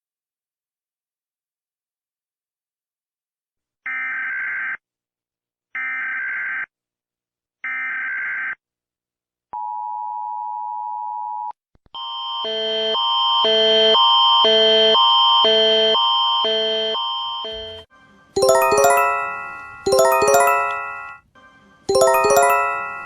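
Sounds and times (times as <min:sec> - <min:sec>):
two-note attention tone: 0:18.4 - 0:21.1, 0:21.9 - 0:23.0.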